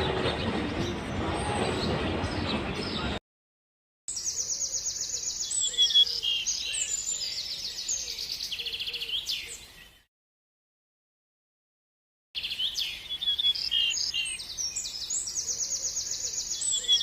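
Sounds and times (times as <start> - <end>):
birds singing trills and chirps: 4.1 - 10.1, 12.4 - 17.0.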